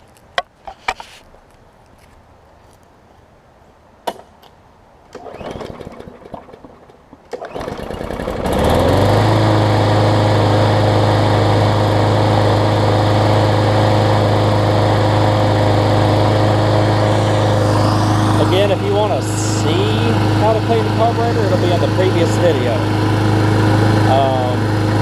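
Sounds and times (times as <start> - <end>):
lawn mower engine running: 5.1 - 25.0.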